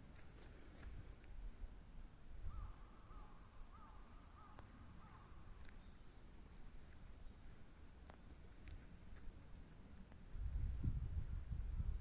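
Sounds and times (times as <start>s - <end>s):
bird calling: 2.4s - 6.3s.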